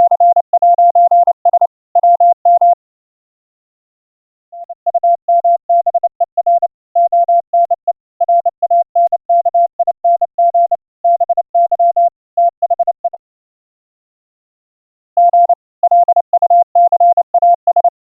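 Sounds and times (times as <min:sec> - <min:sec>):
morse code tone: 0:00.0 - 0:02.8, 0:15.2 - 0:18.0.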